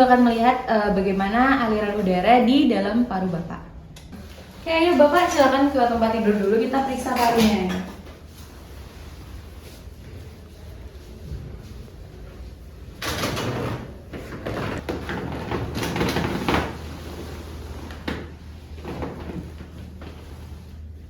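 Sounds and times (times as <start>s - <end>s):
rustling and scraping movement: 4.1s - 13.0s.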